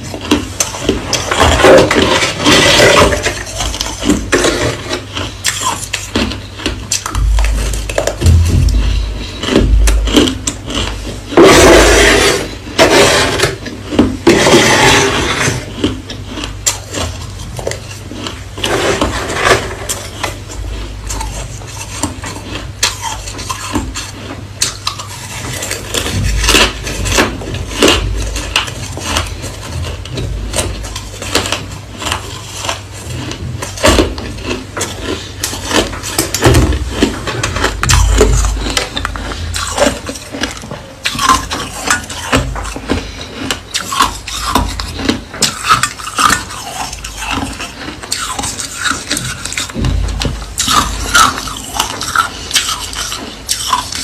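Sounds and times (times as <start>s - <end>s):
crunching ice being chewed: 0.0s - 54.0s.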